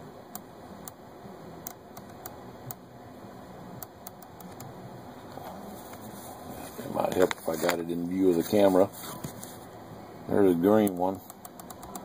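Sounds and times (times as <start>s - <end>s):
background hiss: 0.0s - 12.0s
cables and connectors clicking: 10.8s - 12.0s.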